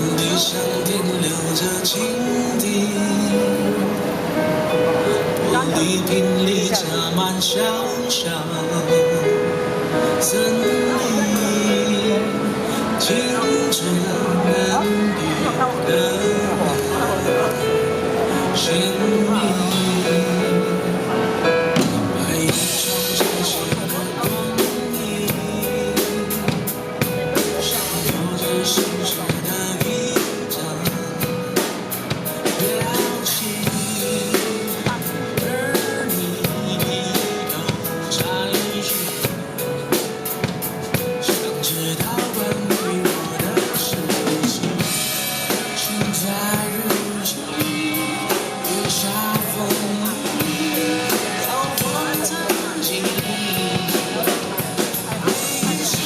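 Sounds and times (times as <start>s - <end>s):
pop ballad music: 0.0s - 56.0s
drum kit beat: 21.5s - 56.0s.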